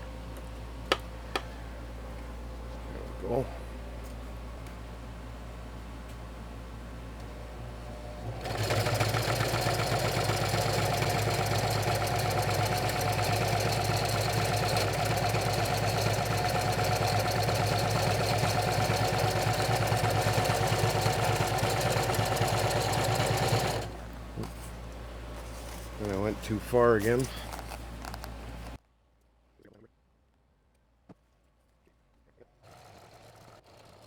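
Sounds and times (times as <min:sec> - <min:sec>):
sewing machine stitching: 0:08.2 - 0:24.0, 0:32.6 - 0:34.0.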